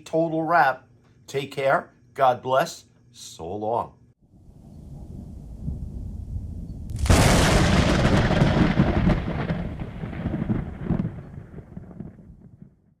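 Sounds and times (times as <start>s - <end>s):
thunderclap: 4.5s - 13.0s.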